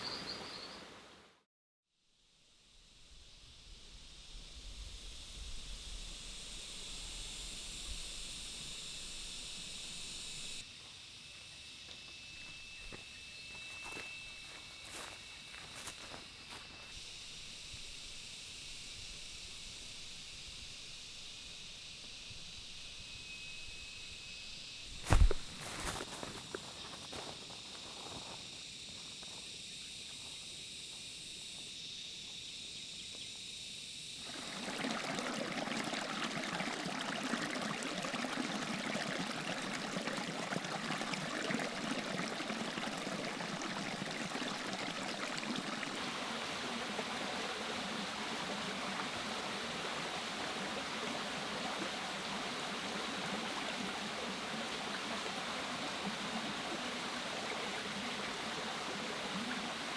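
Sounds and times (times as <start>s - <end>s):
flowing stream: 0.0s - 1.3s, 25.0s - 28.5s, 34.2s - 59.9s
high insect drone: 2.0s - 59.9s.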